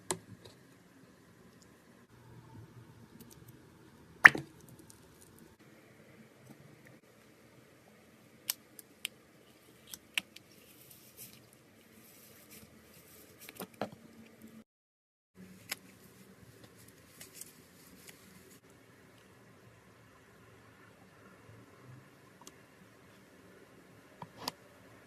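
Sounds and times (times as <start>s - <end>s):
soft slime squishing: 4.4s - 5.6s, 8.3s - 14.6s.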